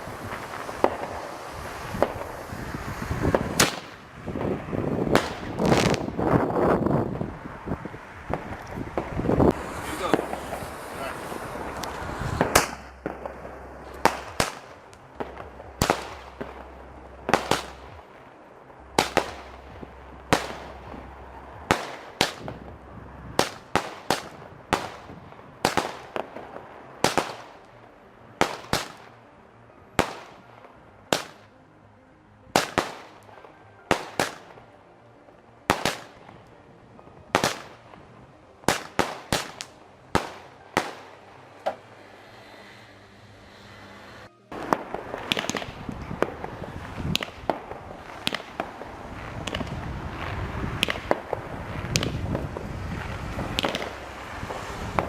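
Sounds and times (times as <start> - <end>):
fireworks bangs with echo: 0.0 - 7.2, 8.2 - 18.1, 18.9 - 27.6, 28.4 - 29.1, 30.0 - 30.5, 31.1 - 31.5, 32.6 - 34.7, 35.7 - 36.4, 37.3 - 38.0, 38.6 - 41.9, 44.5 - 55.0.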